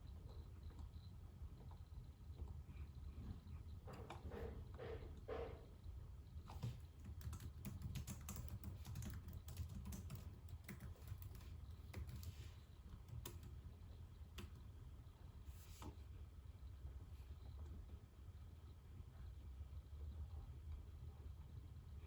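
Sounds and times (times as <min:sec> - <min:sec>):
computer keyboard typing: 0:06.5 - 0:13.6.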